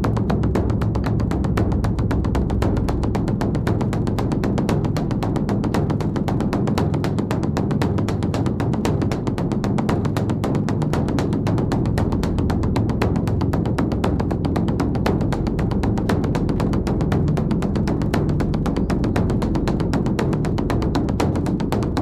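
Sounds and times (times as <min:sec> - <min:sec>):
large drum roll: 0:00.0 - 0:22.0.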